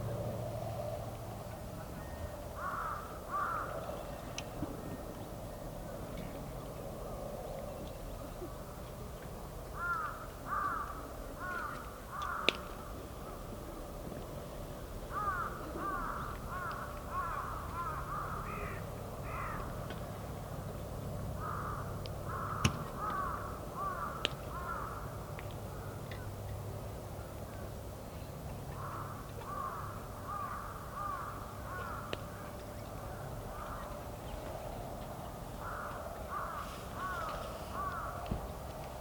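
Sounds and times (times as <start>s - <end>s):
crows cawing: 2.6s - 4.1s, 9.8s - 12.7s, 15.1s - 19.8s, 21.4s - 25.2s, 28.8s - 34.0s, 35.6s - 38.3s.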